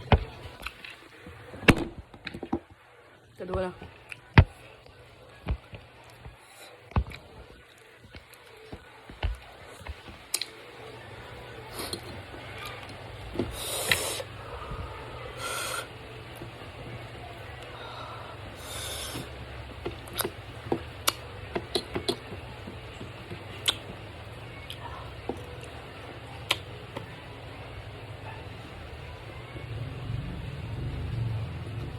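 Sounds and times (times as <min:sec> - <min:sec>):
steady low hum: 0:00.0 - 0:31.9
short hissing bursts: 0:13.5 - 0:14.3, 0:15.4 - 0:15.9, 0:18.6 - 0:19.3
mouth clicks and smacks: 0:23.6 - 0:23.9.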